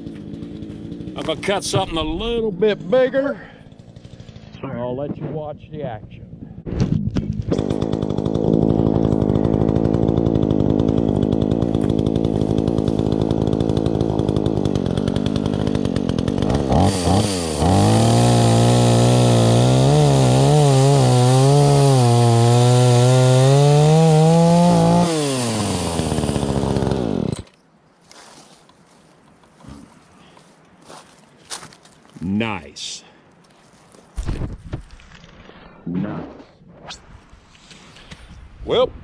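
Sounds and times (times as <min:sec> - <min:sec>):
chainsaw cutting wood: 0:00.0 - 0:05.0, 0:06.6 - 0:28.5.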